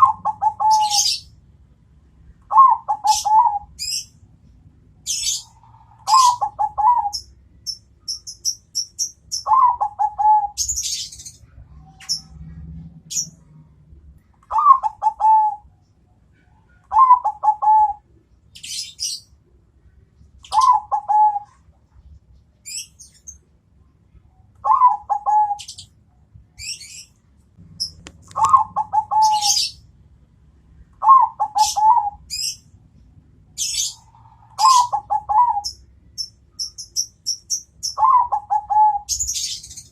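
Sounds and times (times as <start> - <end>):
dove cooing: 0.0 - 1.2, 2.5 - 4.0, 5.1 - 7.3, 9.4 - 11.1, 14.5 - 15.7, 16.8 - 18.1, 20.5 - 21.6, 24.6 - 25.8, 27.8 - 29.8, 31.0 - 32.6, 33.6 - 35.8, 37.9 - 39.6
small birds chirping: 0.0 - 1.4, 2.3 - 29.9, 30.8 - 39.9.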